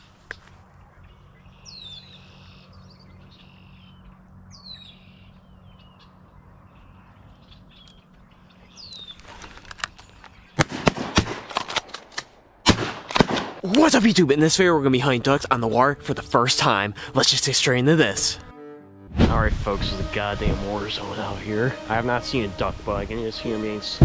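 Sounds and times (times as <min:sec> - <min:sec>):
low steady hum: 0:00.0 - 0:11.1
shotgun blasts: 0:10.6 - 0:13.6.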